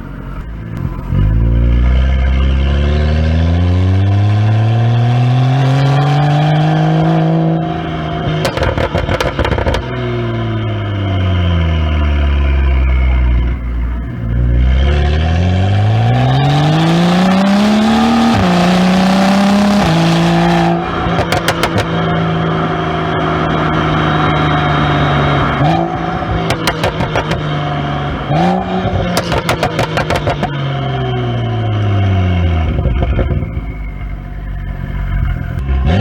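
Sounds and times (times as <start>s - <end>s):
car engine revving hard: 0.8s - 13.4s, 14.3s - 33.5s, 35.5s - 36.0s
exhaust crackles and pops: 8.4s - 10.1s, 20.9s - 22.5s, 25.7s - 30.8s.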